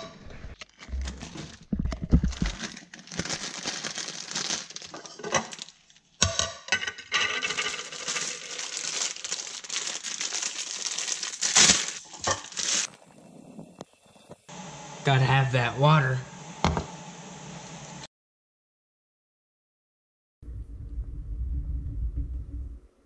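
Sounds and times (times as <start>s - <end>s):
packaging crinkling and rustling: 0.6s - 6.1s, 7.4s - 13.0s.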